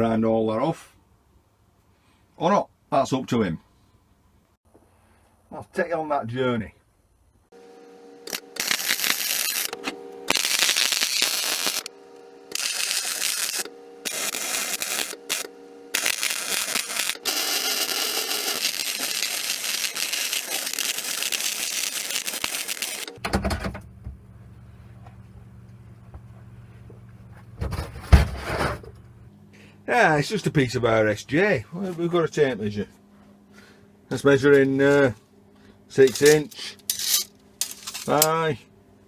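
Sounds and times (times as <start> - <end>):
electric welding crackle: 7.6 - 23.2
electrical hum: 7.6 - 23.2.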